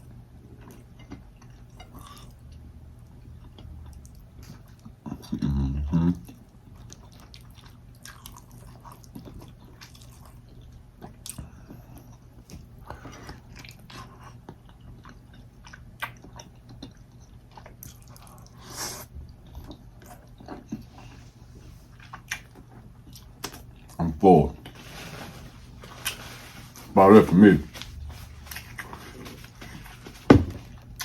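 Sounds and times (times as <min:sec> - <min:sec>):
person chewing food: 0:00.4 - 0:05.5, 0:06.2 - 0:24.0, 0:27.7 - 0:31.0.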